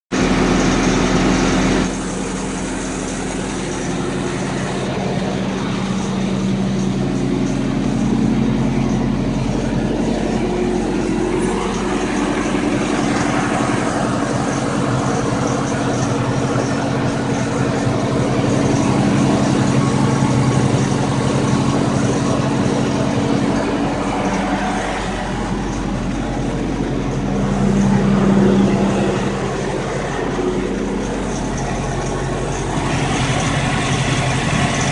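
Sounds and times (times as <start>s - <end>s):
car engine idling: 0.1s - 34.9s.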